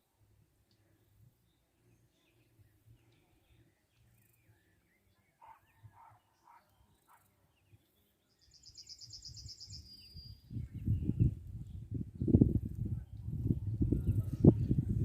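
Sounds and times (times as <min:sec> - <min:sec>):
bird chirps and trill: 0:08.4 - 0:11.3.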